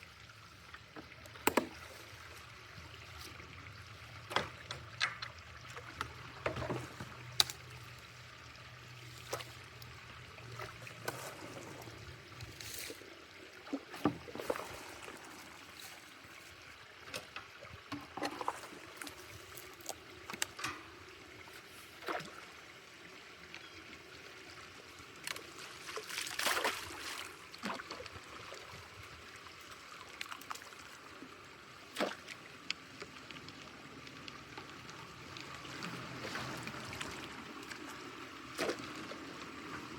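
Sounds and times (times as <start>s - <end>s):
water trickling and running: 0.0s - 39.9s
splashes: 8.9s - 13.0s, 13.6s - 16.5s, 25.2s - 28.8s, 31.8s - 33.6s, 35.3s - 39.9s.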